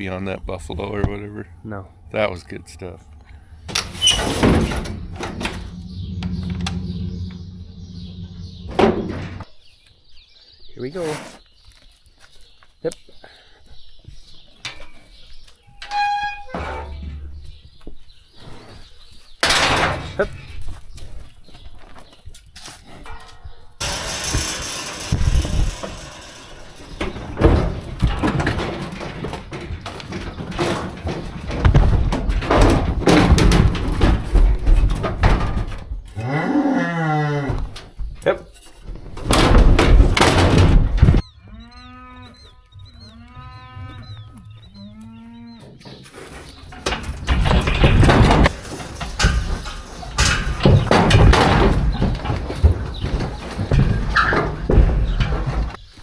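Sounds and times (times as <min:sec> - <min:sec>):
knocking and clattering: 0:03.7 - 0:09.5, 0:23.8 - 0:36.0, 0:38.6 - 0:41.2, 0:46.7 - 0:55.8
bull mooing: 0:41.4 - 0:45.6.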